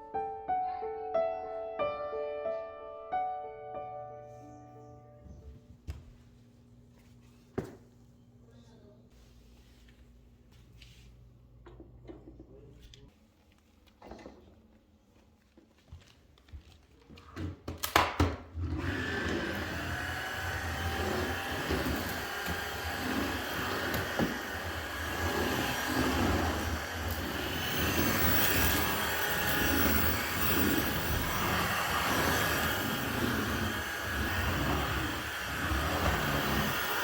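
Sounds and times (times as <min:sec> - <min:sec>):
electric appliance motor running: 0:18.5 - 0:37.0.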